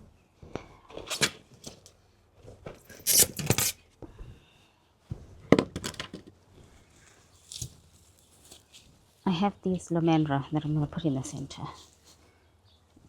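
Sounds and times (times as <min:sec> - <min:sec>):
soil scraping and rustling: 0:02.8 - 0:03.8, 0:07.1 - 0:09.2.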